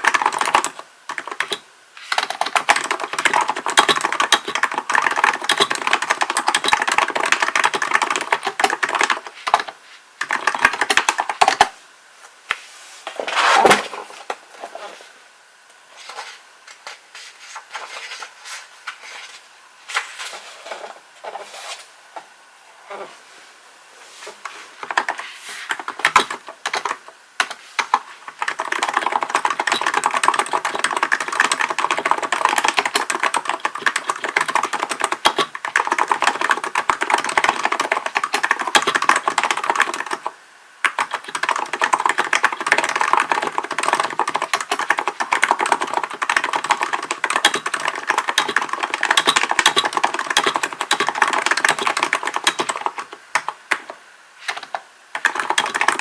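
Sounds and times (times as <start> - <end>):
rapid keyboard typing: 0.0 - 11.7, 24.8 - 56.0.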